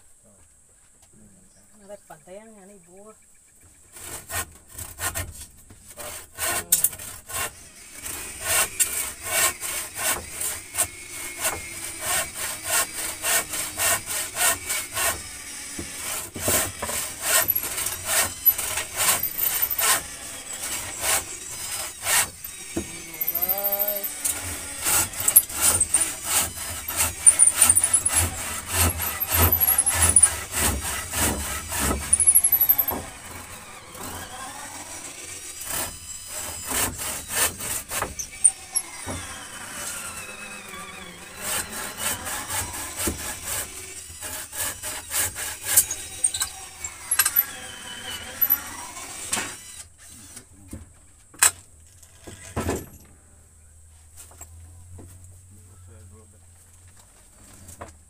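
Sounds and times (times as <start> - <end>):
hand tools striking wood: 4.0 - 34.2, 35.6 - 40.2, 41.4 - 47.4.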